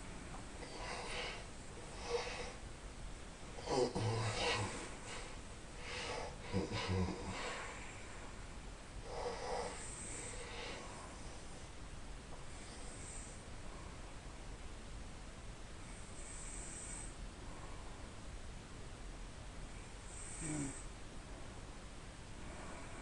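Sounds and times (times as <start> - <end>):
person snoring: 3.6 - 5.2, 5.9 - 7.7, 20.1 - 20.9.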